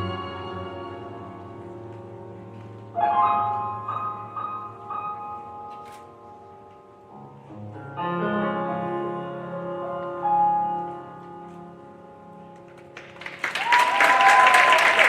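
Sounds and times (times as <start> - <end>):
piano-led music: 0.0 - 14.4
people clapping: 12.7 - 15.0.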